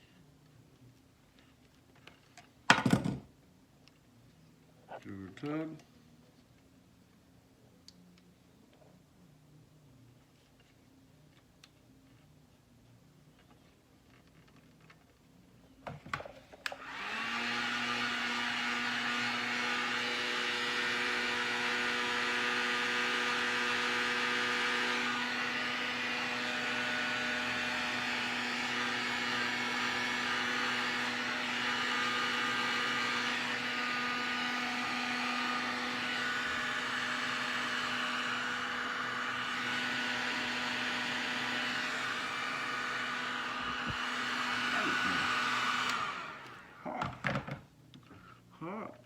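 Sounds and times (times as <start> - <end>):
heat gun blowing: 16.6 - 47.1.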